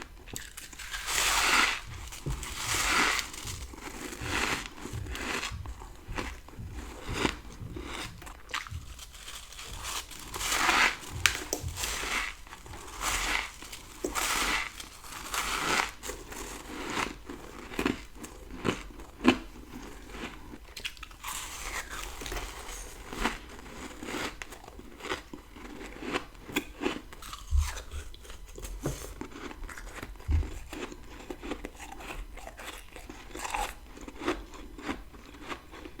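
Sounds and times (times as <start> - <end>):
crunching frost bites: 8.5 - 16.0.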